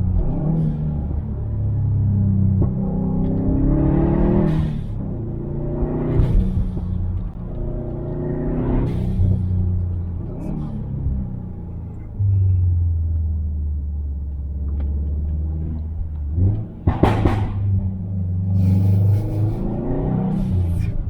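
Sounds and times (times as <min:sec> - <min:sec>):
car engine droning: 0:00.0 - 0:21.0
exhaust pops and bangs: 0:16.5 - 0:17.9.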